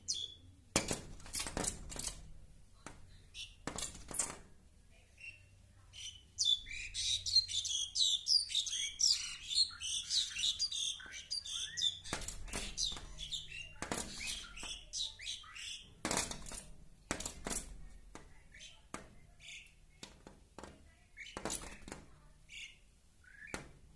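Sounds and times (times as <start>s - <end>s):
bird chirps squeaks and whistles: 0.0s - 0.5s, 3.3s - 4.3s, 5.2s - 16.0s, 22.5s - 23.7s
knocks against glass: 0.8s - 3.0s, 3.6s - 4.5s, 12.0s - 14.8s, 16.0s - 18.3s, 21.4s - 22.1s.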